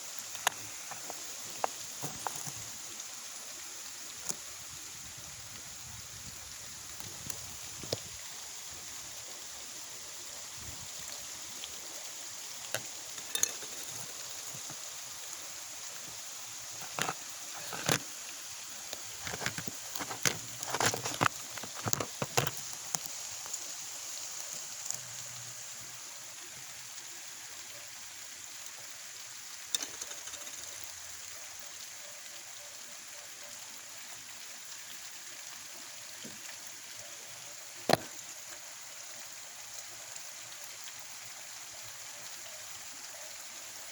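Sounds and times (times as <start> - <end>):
steady rain hiss: 0.0 - 43.9
drops ticking on hard surface: 12.6 - 14.9, 29.7 - 30.9.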